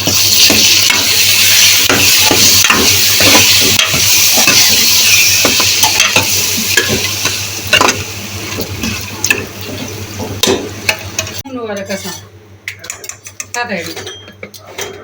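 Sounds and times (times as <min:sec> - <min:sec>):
spoon scraping a pan: 0:00.0 - 0:09.4, 0:10.9 - 0:12.3
food sizzling in a hot pan: 0:00.0 - 0:11.4.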